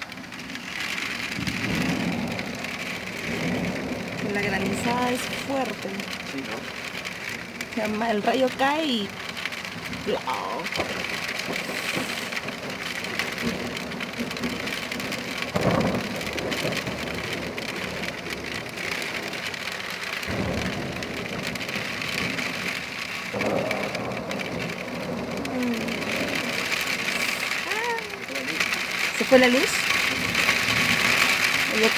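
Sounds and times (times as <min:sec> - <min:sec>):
hail and rain pelting down: 0:00.0 - 0:31.9
thunder rumbling: 0:00.0 - 0:31.9.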